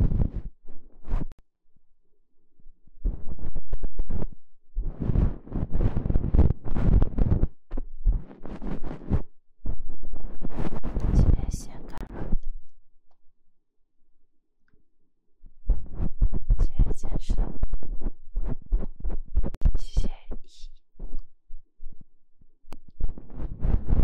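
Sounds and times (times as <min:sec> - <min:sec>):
fingers tapping and scraping microphone: 0:00.0 - 0:01.4, 0:03.0 - 0:12.6, 0:15.4 - 0:22.1, 0:22.7 - 0:24.0.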